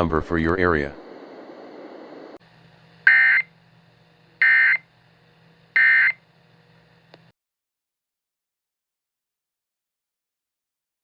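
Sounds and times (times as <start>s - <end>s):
screeching data tone bursts: 3.0s - 3.5s, 4.4s - 4.9s, 5.7s - 6.2s.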